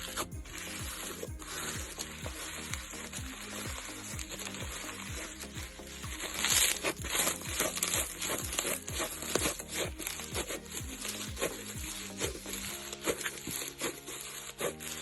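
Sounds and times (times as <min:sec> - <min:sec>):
background music with low beat: 0:00.0 - 0:15.0.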